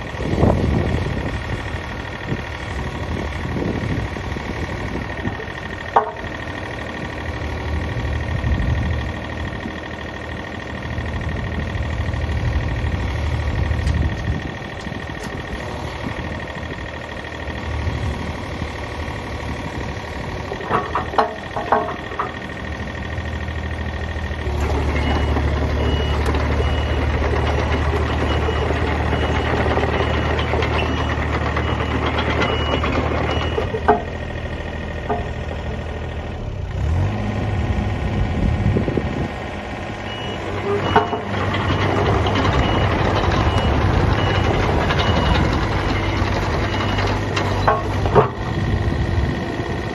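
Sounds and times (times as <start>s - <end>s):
excavator diesel engine: 0.0s - 49.9s.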